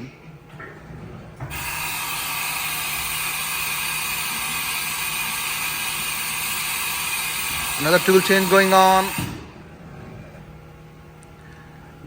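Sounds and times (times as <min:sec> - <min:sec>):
faint machine hum: 0:00.0 - 0:12.0
machining center spindle hiss: 0:01.6 - 0:09.5.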